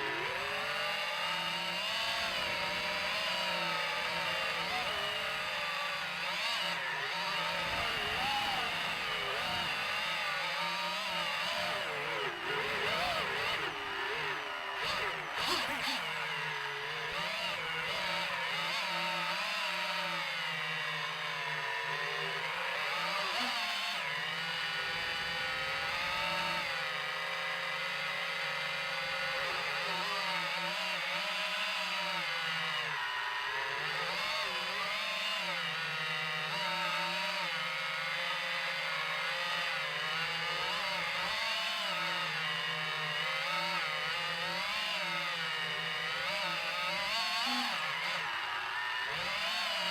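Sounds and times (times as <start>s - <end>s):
drone propellers whining: 0.0s - 27.4s, 44.9s - 49.9s.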